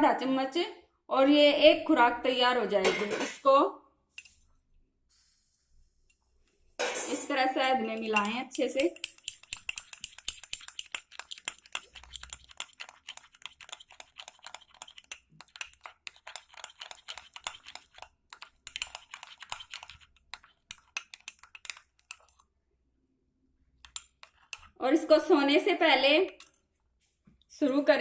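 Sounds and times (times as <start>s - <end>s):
spoon clicking against bowl: 8.0s - 22.3s, 23.8s - 24.7s.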